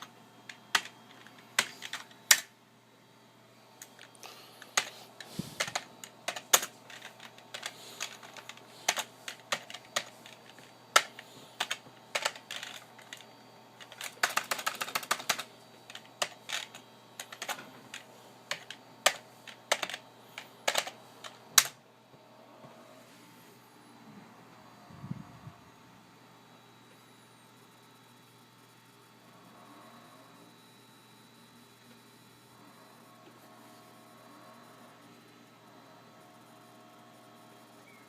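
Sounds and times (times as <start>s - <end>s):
typing on computer keyboard: 0.0s - 2.5s, 5.6s - 13.2s, 13.8s - 21.8s.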